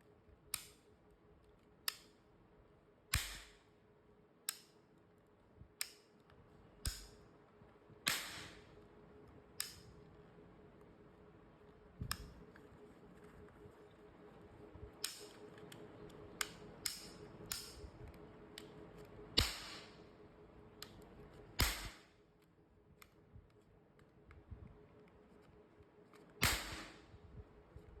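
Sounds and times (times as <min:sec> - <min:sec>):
toy gun shots: 0:08.1 - 0:08.6, 0:21.6 - 0:22.1, 0:26.4 - 0:27.0.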